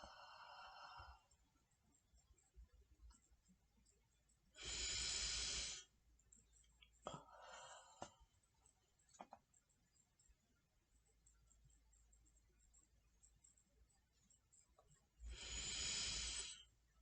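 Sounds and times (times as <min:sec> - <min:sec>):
faint breath: 0:00.0 - 0:01.4, 0:04.6 - 0:05.9, 0:07.0 - 0:08.3, 0:15.2 - 0:16.8.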